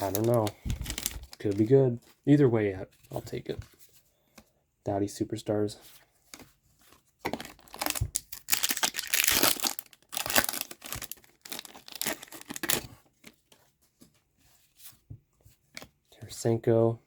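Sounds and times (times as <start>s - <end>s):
wrapper tearing and crinkling: 0.0s - 1.7s, 7.3s - 12.9s.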